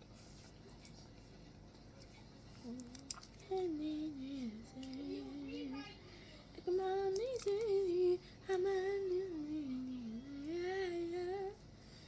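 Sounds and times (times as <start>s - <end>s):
girl singing: 2.6s - 11.6s.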